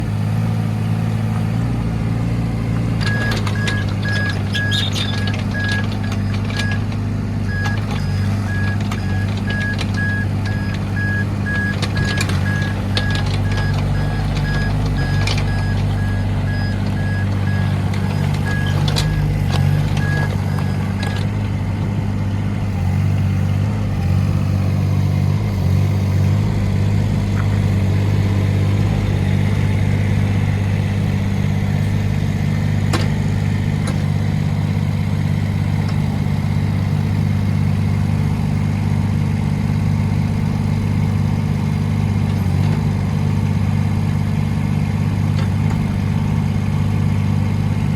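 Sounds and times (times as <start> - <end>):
diesel excavator engine running: 0.0 - 47.9
rapid beeping alarm: 3.0 - 21.4.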